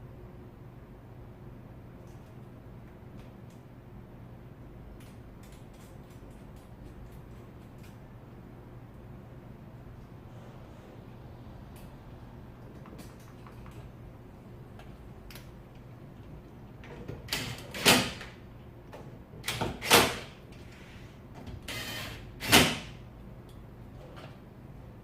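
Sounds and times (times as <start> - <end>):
mirror motor whir: 21.7 - 22.3.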